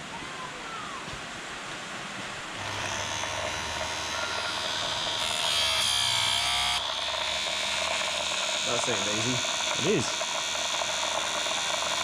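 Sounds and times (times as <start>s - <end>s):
chain sharpener motor whining: 2.5s - 12.0s.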